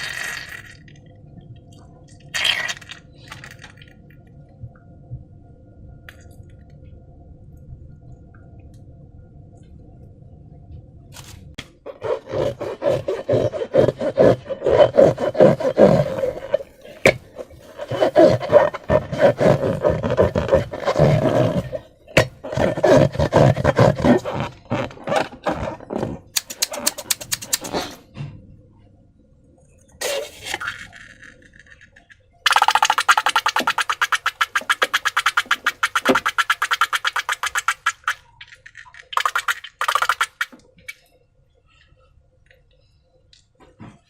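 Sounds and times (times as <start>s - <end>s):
faint low hum: 0.0s - 35.9s, 40.4s - 44.0s
slime squelching: 11.9s - 28.0s, 32.5s - 40.9s.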